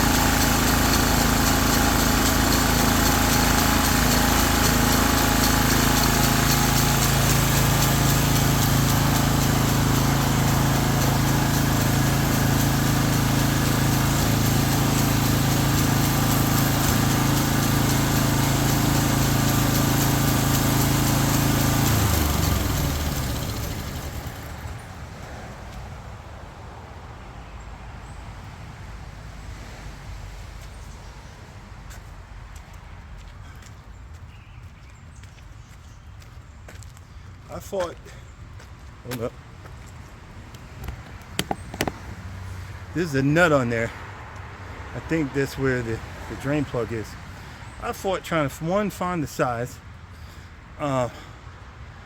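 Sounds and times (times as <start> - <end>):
aerator engine running: 0.0 - 25.2, 40.5 - 49.7
low outdoor background: 30.2 - 52.0.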